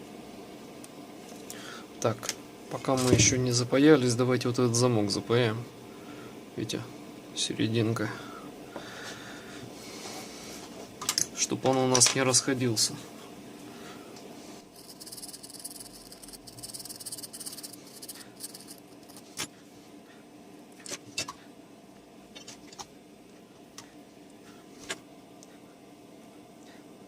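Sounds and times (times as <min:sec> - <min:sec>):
soldering iron sizzling flux: 0:14.4 - 0:19.4.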